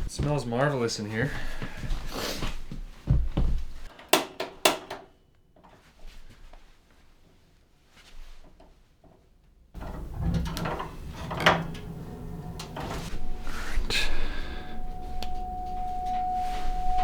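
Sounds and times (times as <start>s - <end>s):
knocks and clatters: 9.8s - 13.3s
heater high-pitched tone: 11.2s - 17.0s.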